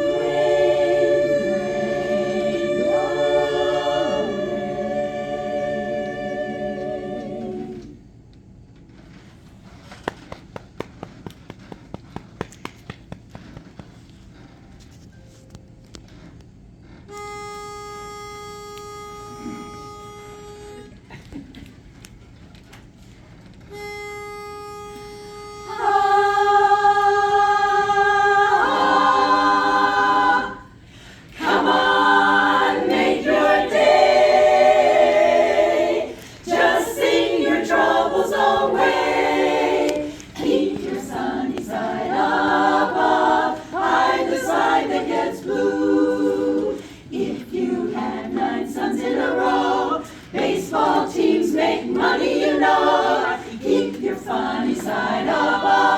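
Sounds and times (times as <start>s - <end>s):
vocal group singing in harmony: 0.0s - 8.2s, 25.3s - 55.9s.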